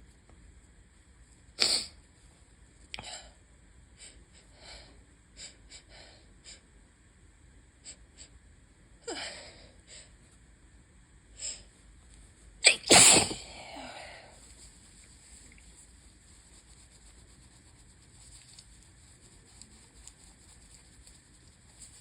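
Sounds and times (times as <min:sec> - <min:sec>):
faint steady hiss: 0:00.0 - 0:22.0
person sneezing: 0:12.6 - 0:14.2.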